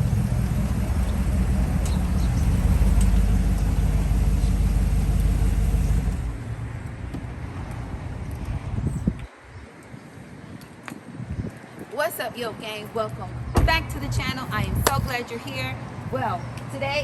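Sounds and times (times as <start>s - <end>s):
vehicle engine rumbling: 0.0s - 9.6s.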